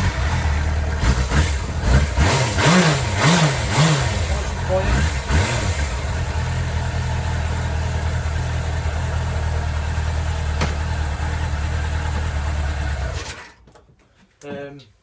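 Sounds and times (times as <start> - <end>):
motorcycle engine idling: 0.0 - 2.2, 4.1 - 13.4.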